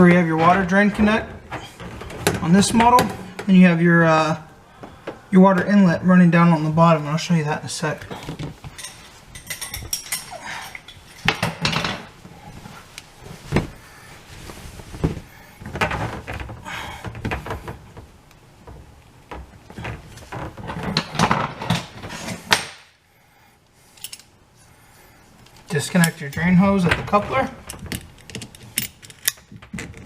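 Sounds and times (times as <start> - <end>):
tools knocking and rattling on plumbing: 0.0 - 5.9, 8.1 - 12.1, 15.7 - 22.3.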